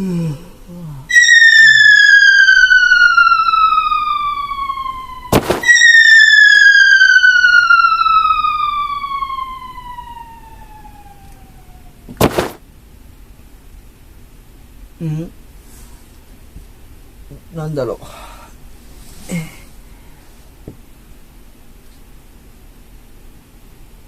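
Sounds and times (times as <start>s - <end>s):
cartoon descending whistle: 1.1s - 12.0s
cartoon crash: 1.1s - 12.6s.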